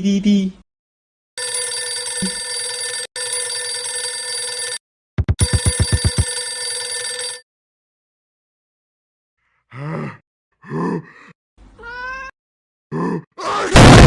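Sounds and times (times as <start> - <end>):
electronic telephone ringing: 1.4 - 7.4.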